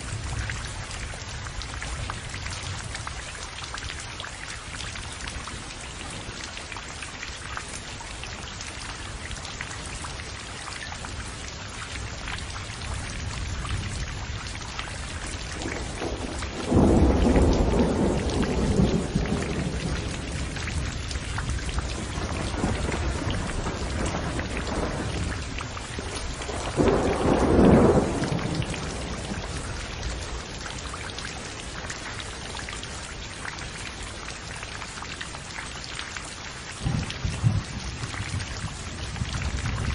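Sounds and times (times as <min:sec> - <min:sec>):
heavy rain: 0:00.0 - 0:39.9
thunder claps: 0:15.6 - 0:30.2.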